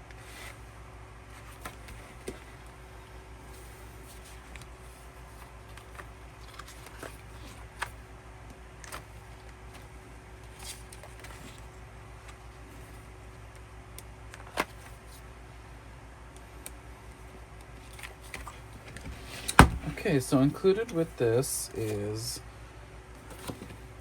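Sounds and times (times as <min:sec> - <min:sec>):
low steady hum: 0:00.0 - 0:24.0
paper and plastic being handled: 0:01.3 - 0:02.7, 0:03.5 - 0:08.0, 0:08.8 - 0:13.1, 0:14.4 - 0:15.2.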